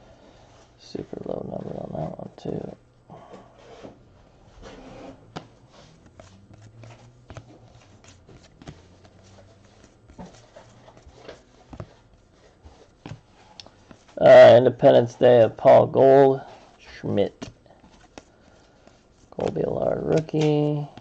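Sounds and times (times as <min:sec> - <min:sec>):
low steady hum: 0:00.0 - 0:21.0
trading cards clicking and rustling: 0:05.2 - 0:12.1, 0:12.8 - 0:21.0.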